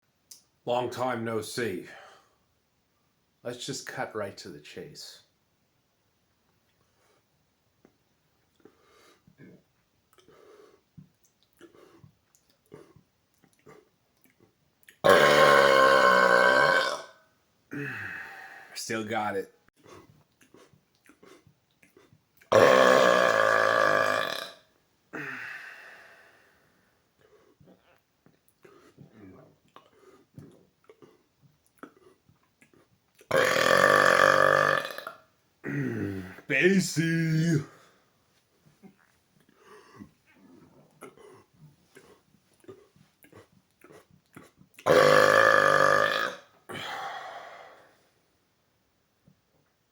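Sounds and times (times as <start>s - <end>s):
breathing: 1.9s - 2.4s, 8.6s - 9.3s, 10.2s - 10.8s, 17.8s - 18.8s, 25.2s - 27.6s, 39.5s - 40.4s, 46.7s - 48.2s
man burping loudly: 15.0s - 18.4s, 22.5s - 25.6s, 33.3s - 36.5s, 44.8s - 47.2s.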